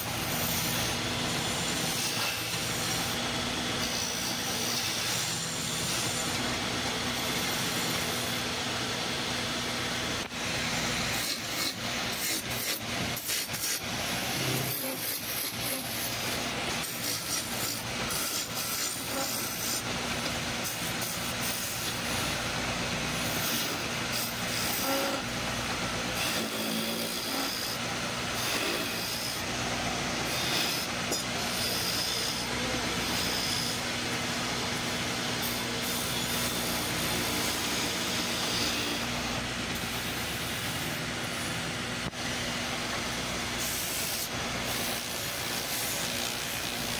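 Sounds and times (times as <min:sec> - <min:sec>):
wood lathe motor humming: 0:00.0 - 0:46.9
turning tool scraping wood: 0:10.2 - 0:29.6.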